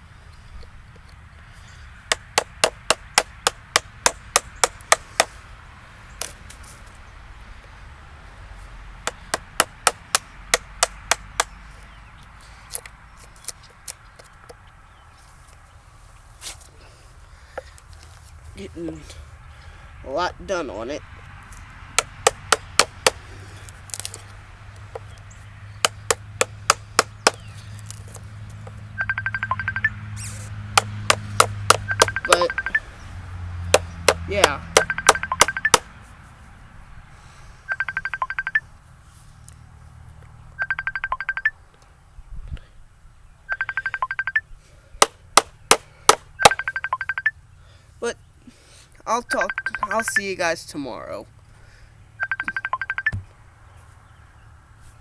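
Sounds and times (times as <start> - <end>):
mallet striking wood: 2.1 - 5.3, 9.1 - 11.5, 22.0 - 23.2, 25.8 - 27.4, 30.8 - 32.8, 33.7 - 35.9, 45.0 - 46.9.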